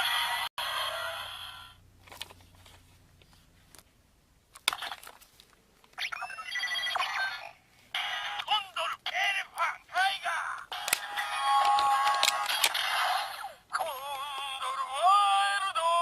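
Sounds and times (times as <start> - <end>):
toy speaker jingle: 6.0 - 8.8
plastic control clicks: 10.8 - 12.8.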